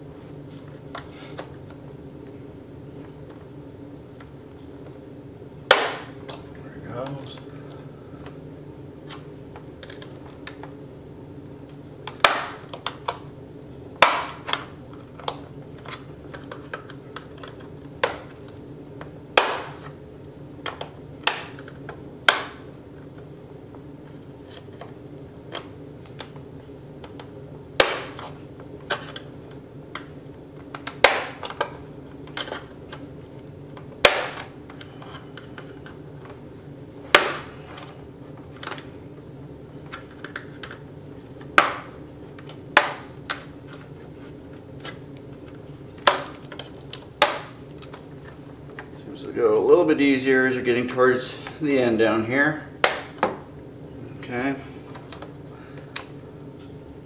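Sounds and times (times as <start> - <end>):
steady low hum: 0.0 - 57.0
plastic clips snapping loose: 27.0 - 33.0, 44.8 - 48.0, 55.0 - 56.2.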